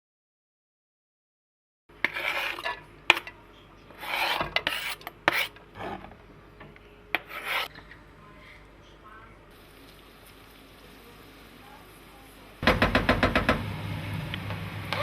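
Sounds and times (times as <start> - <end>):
rasping scraping strokes: 2.0 - 2.8, 4.0 - 6.0, 7.2 - 7.7.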